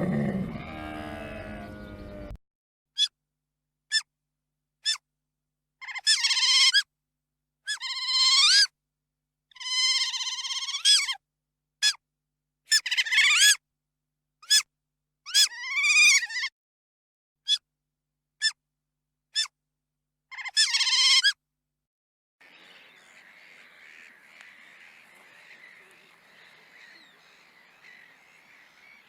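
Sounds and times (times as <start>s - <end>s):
animal cries rising and falling: 0.0s - 2.4s, 9.6s - 11.2s
animal chirps: 22.9s - 29.0s.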